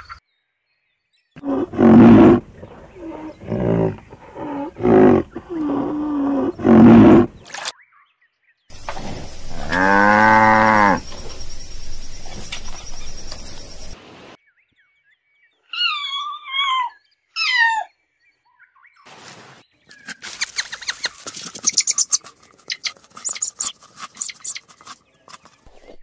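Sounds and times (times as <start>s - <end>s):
background noise: 8.7s - 26.0s
sharp high chirps and clicks: 20.2s - 24.9s
wavering high animal calls: 20.4s - 24.7s.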